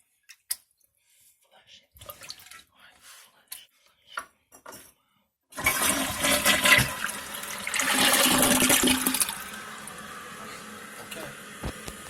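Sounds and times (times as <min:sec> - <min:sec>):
toilet flushing: 0:05.5 - 0:12.0.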